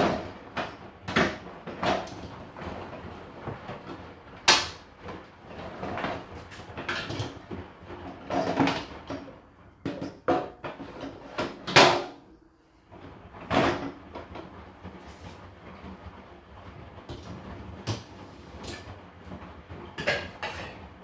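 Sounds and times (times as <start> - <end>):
dishes clattering: 20.0 - 20.8.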